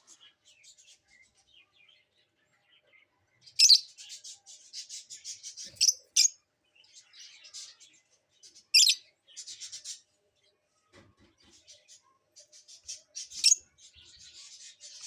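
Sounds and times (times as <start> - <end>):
lovebirds chirping: 0.0 - 7.9, 8.5 - 10.0, 11.4 - 15.0
sharp bird calls: 8.8 - 9.0, 12.9 - 13.6.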